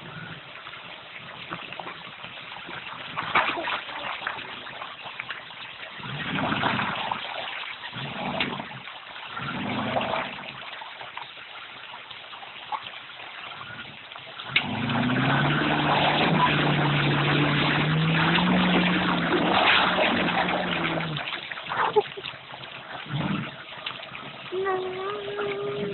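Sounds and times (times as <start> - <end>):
water and mud splashing: 0.0 - 25.9
engine revving: 14.5 - 21.2.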